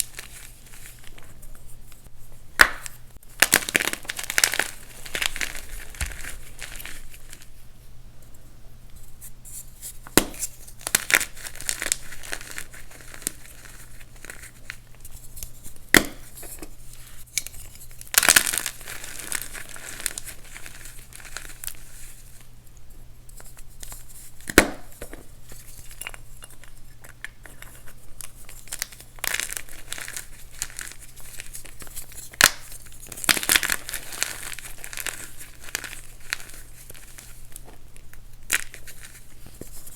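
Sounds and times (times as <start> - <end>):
sharp snaps of breaking chalk: 2.6 - 3.7, 24.5 - 24.9
chalk crunching and crumbling: 9.6 - 22.3, 25.5 - 37.8.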